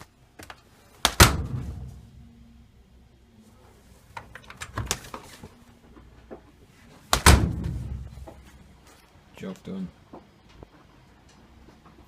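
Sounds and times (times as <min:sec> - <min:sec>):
tumble dryer door thump: 0:01.2 - 0:02.2, 0:07.2 - 0:08.4.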